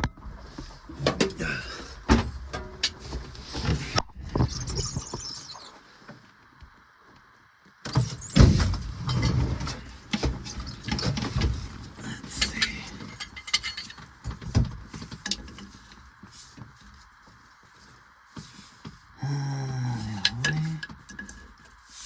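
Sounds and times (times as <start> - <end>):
hand tools clanking on metal: 8.5 - 16.8, 19.9 - 21.8.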